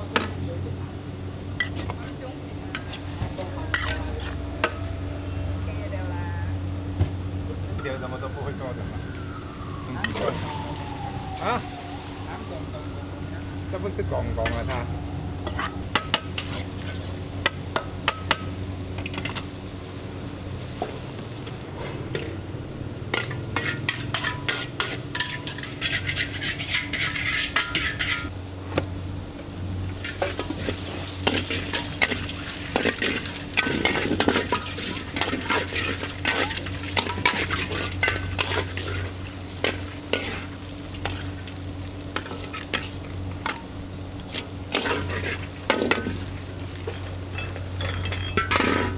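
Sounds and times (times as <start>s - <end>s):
noodles sizzling: 1.4s - 14.9s, 23.2s - 48.6s
metal spatula scraping a wok: 1.6s - 2.1s, 2.7s - 5.1s, 15.4s - 17.2s, 23.2s - 28.3s, 30.0s - 41.4s, 44.2s - 48.9s
low hum: 2.3s - 16.0s.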